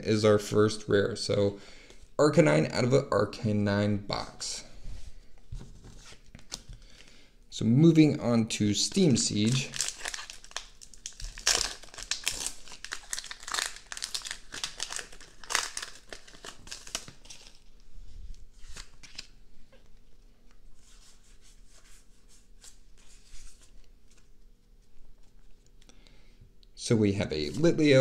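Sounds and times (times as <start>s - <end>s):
foil wrapper crinkling and tearing: 9.4s - 17.7s.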